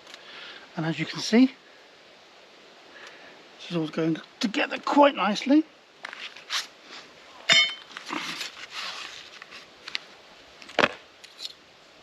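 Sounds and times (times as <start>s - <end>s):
metal parts clinking and scraping: 11.2s - 11.6s.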